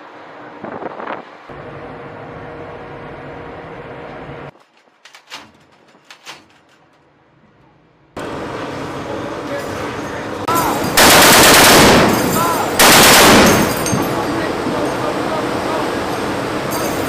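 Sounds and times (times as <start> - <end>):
steady mechanical hum: 0.0 - 17.0
wind noise: 0.3 - 1.5.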